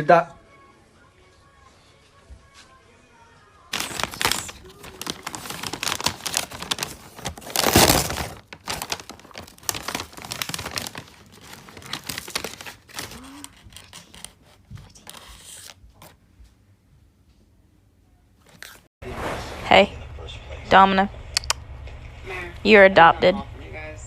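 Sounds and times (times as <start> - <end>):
wrapper crinkling and tearing: 3.7 - 16.1.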